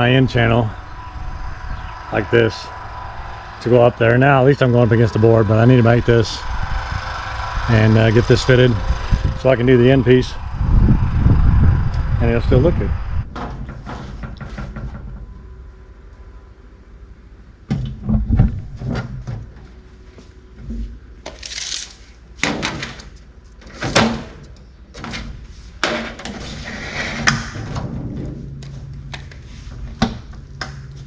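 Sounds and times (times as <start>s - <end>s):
metal scraping: 0.0s - 15.6s, 25.5s - 31.0s.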